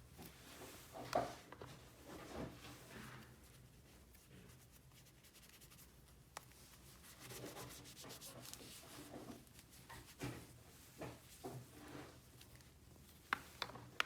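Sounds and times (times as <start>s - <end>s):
faint rubbing and scraping: 6.8s - 12.4s.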